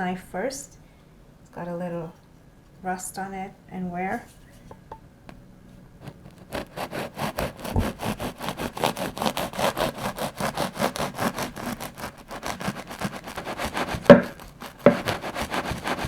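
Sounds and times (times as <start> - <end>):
bread knife sawing through loaf: 6.0 - 16.0
knocks: 14.0 - 15.1.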